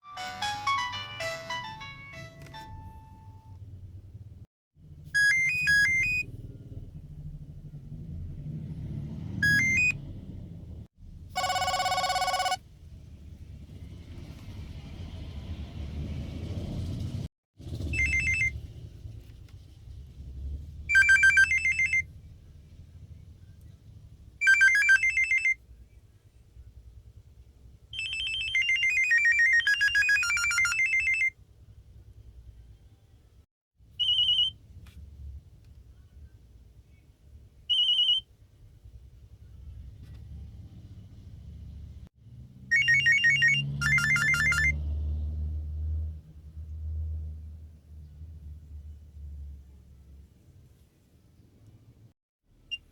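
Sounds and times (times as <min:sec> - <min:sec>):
electronic ringtone beeps: 0:00.0 - 0:03.5, 0:05.2 - 0:06.2, 0:09.4 - 0:10.0, 0:11.4 - 0:12.6, 0:18.0 - 0:18.5, 0:20.9 - 0:22.0, 0:24.4 - 0:25.6, 0:28.0 - 0:31.3, 0:42.7 - 0:44.8.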